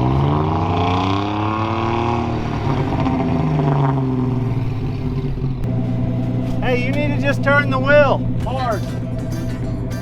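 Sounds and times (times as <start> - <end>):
engine revving: 0.0 - 8.4.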